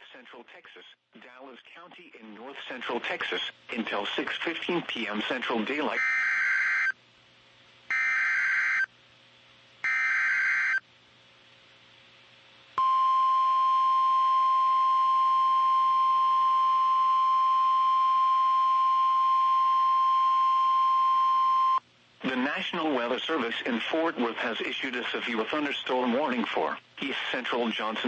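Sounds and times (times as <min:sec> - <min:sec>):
steady warning alarm tone: 0:06.0 - 0:06.9, 0:07.9 - 0:08.9, 0:09.8 - 0:10.8.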